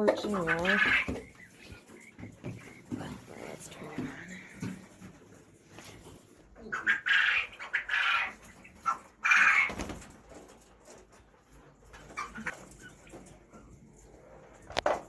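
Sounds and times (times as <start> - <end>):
faint chicken clucks: 0.0 - 3.2, 6.4 - 9.7
chickens squawking: 0.0 - 5.1, 6.0 - 10.0, 12.0 - 13.2.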